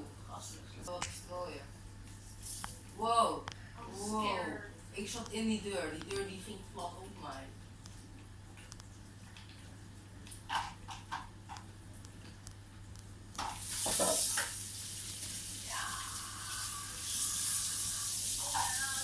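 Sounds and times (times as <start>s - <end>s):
loud steady hiss: 13.6s - 19.0s.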